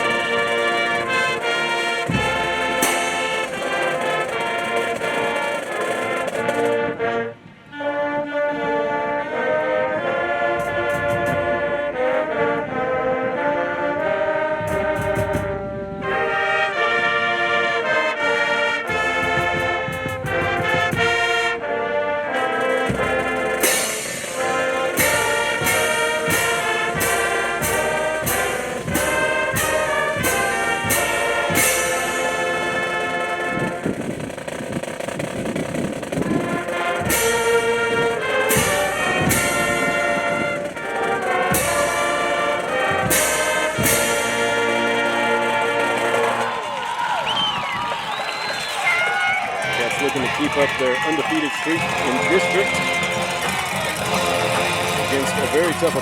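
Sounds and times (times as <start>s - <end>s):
sharp percussion hits: 0.0s - 6.8s, 14.6s - 15.7s, 18.9s - 21.4s, 22.3s - 46.9s, 48.7s - 56.0s
brass band music: 0.0s - 56.0s.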